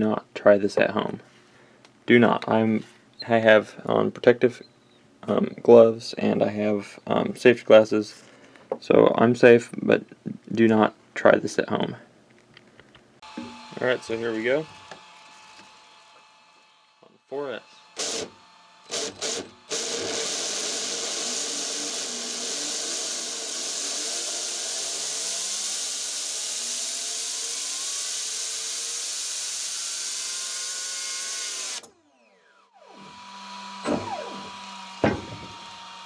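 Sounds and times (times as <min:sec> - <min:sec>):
electric motor whining: 0:17.9 - 0:36.0.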